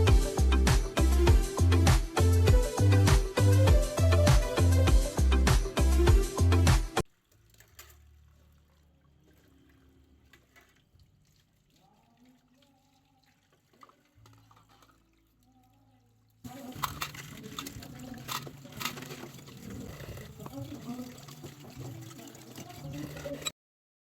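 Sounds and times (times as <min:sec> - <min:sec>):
tap water running into sink: 0:07.3 - 0:15.4, 0:16.5 - 0:23.5.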